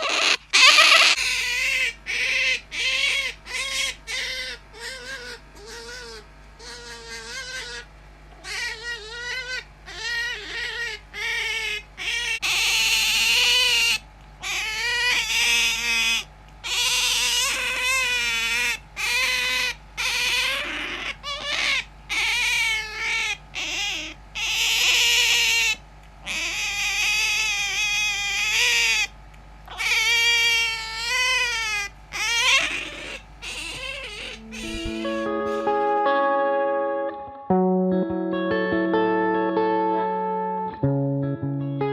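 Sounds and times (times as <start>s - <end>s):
otter squealing: 0.0s - 7.8s, 29.7s - 36.2s.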